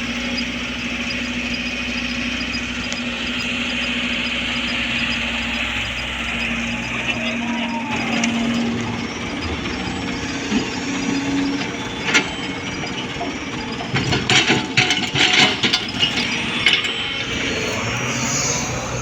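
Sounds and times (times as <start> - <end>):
excavator engine running: 0.0 - 19.0
soil and rock clattering into truck: 11.6 - 16.8.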